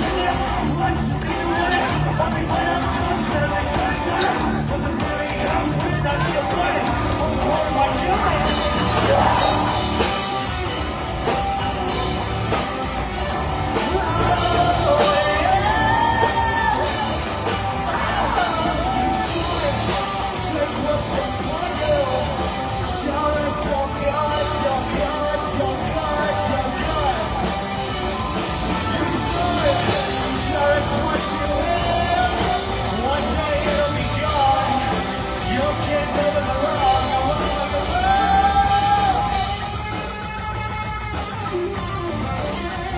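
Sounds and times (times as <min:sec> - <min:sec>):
person singing and yelling: 0:00.0 - 0:42.9
rock band playing loud: 0:00.0 - 0:42.9.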